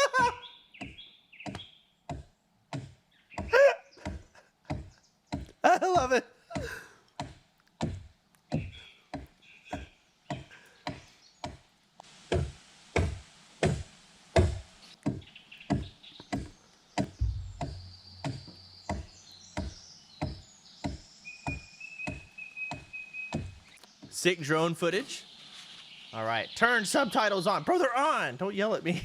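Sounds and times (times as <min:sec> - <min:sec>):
steady electronic tones: 0:17.2 - 0:18.5.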